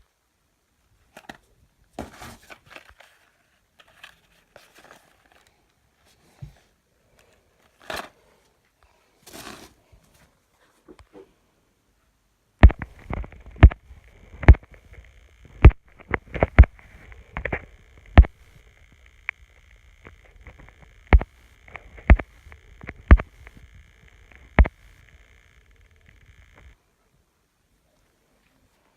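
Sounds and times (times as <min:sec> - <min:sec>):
faint high hiss: 0:00.0 - 0:28.9.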